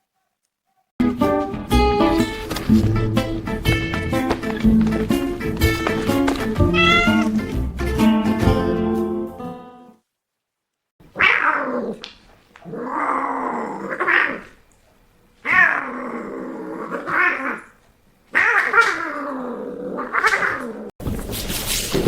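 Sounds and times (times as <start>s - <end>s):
cat yowling: 6.6s - 7.5s, 11.1s - 12.0s, 12.6s - 14.5s, 15.4s - 16.0s, 18.4s - 19.2s.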